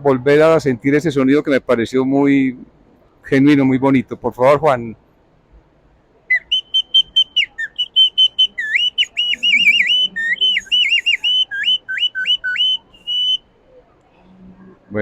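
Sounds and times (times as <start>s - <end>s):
bird-call whistle chirping: 6.3s - 13.4s.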